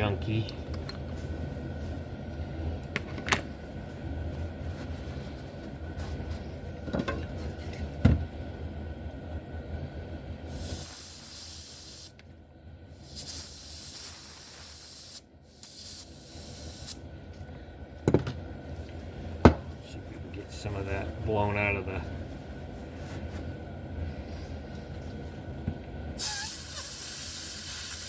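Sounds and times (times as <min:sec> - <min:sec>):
compressed air hissing: 0:10.5 - 0:12.1, 0:12.9 - 0:17.0, 0:26.2 - 0:28.0.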